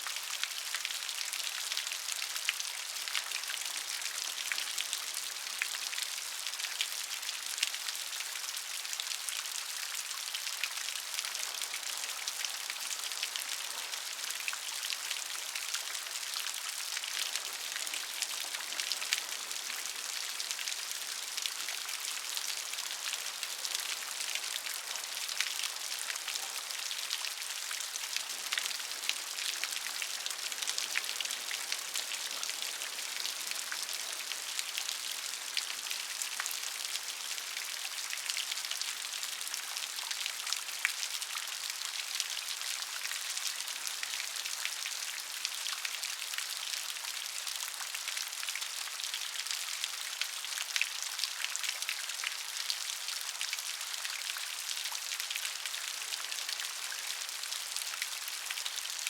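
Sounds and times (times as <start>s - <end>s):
steady rain hiss: 11.0s - 46.2s.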